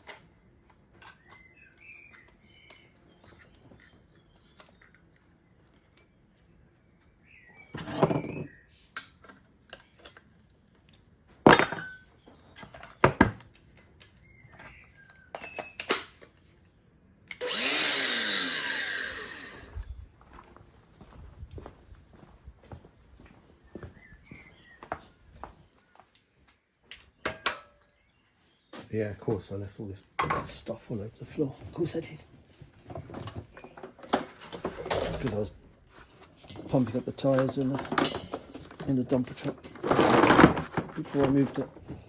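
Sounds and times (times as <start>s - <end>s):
knocks and clicks of tools handled: 12.6s - 16.3s, 26.9s - 27.8s, 32.6s - 35.4s, 36.2s - 42.0s
handheld power tool motor: 17.3s - 19.9s, 39.7s - 40.6s.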